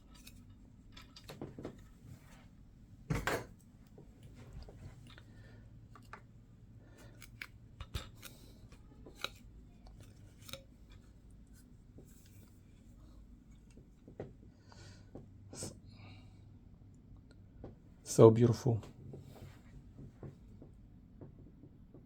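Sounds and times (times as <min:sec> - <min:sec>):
light plastic clicks and taps: 0:07.0 - 0:11.1.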